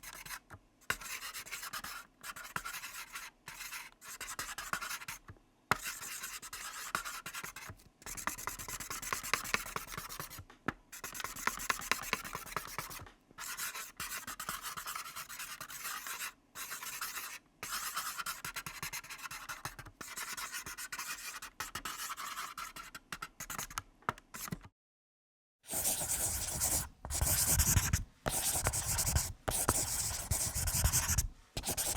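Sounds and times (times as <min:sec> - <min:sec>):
pencil writing: 0:00.0 - 0:05.1, 0:11.0 - 0:23.7, 0:25.7 - 0:31.9.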